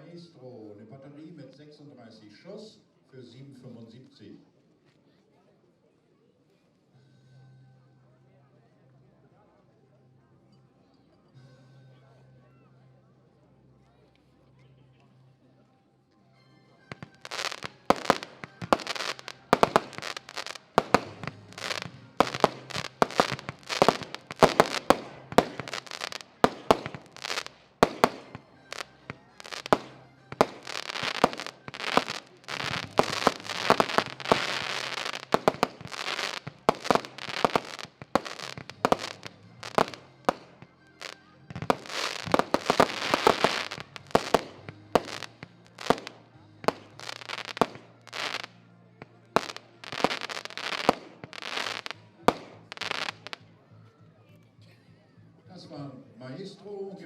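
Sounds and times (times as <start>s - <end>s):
firework crackling: 16.9s - 48.6s, 49.3s - 53.4s
firework launches and bursts: 17.0s - 48.5s, 49.4s - 53.4s.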